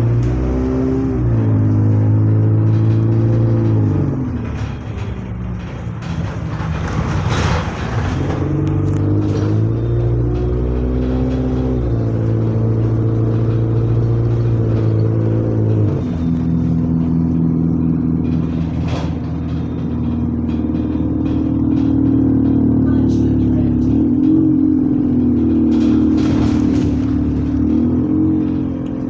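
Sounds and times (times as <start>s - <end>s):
diesel bus engine accelerating: 0.0s - 29.0s
sharp knock or rattle: 24.0s - 29.0s.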